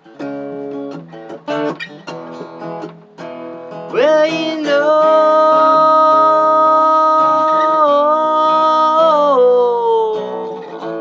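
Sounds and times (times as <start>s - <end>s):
acoustic guitar: 0.0s - 11.0s
man singing: 3.9s - 11.0s.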